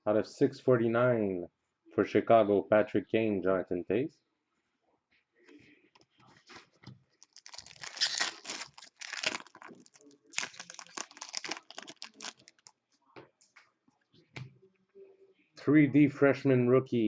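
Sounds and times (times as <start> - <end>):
foil wrapper crinkling and tearing: 7.2 - 12.7.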